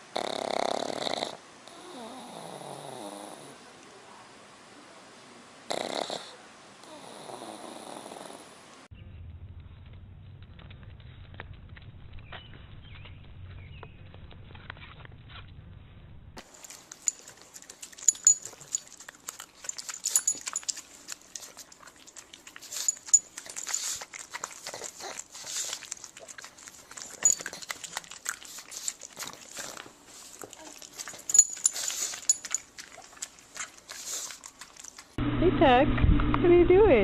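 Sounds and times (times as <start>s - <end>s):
low hum: 8.9s - 16.4s, 35.2s - 37.0s.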